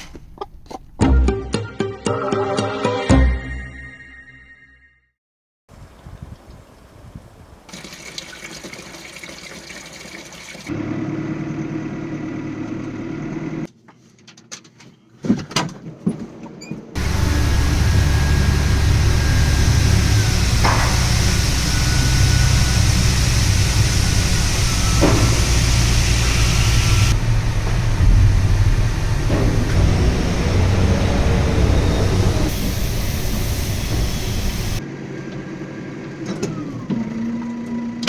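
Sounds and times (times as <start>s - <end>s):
diesel engine droning: 10.7s - 13.7s, 17.0s - 38.0s
low engine hum: 10.7s - 13.7s, 17.0s - 38.0s.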